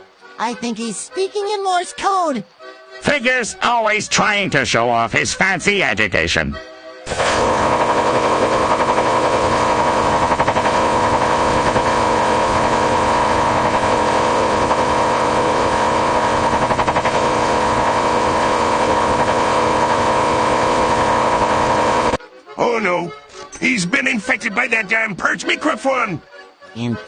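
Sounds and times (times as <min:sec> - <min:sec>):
electronic noise: 0:07.1 - 0:22.2.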